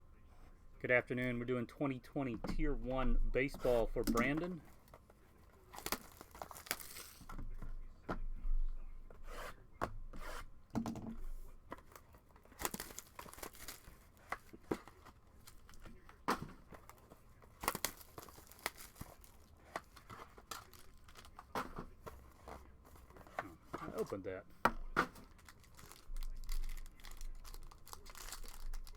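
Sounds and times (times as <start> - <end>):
wrapping tearing and crinkling: 5.4 - 7.3, 11.8 - 21.5, 25.1 - 28.9.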